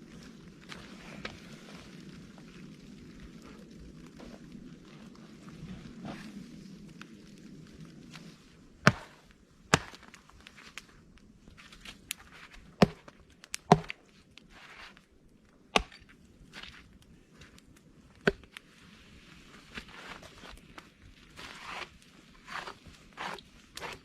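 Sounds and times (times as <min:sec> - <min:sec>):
rustling: 0:00.1 - 0:15.2.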